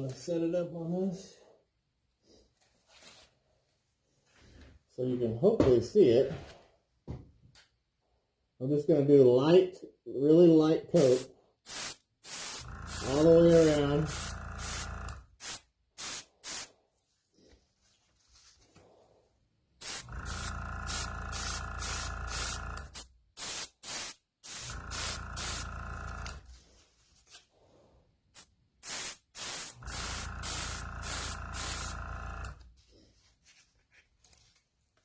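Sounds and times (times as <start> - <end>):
air compressor humming: 11.0 - 16.7, 19.8 - 26.5, 28.4 - 32.7
airbrush spraying hiss bursts: 11.0 - 16.7, 19.8 - 25.7, 28.4 - 32.0.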